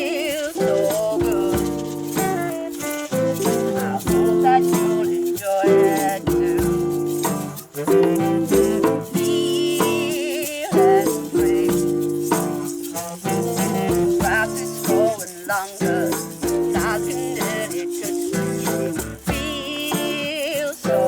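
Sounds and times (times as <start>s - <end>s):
shaker rattle: 0.0s - 21.0s.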